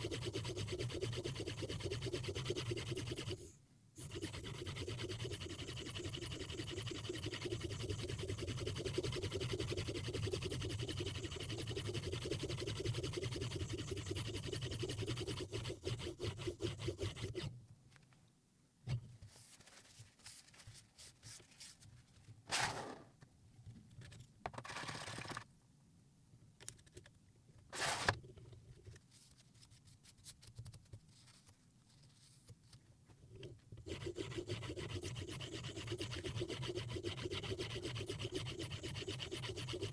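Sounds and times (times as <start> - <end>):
sharpening stone scraping knife: 33.9 - 39.9.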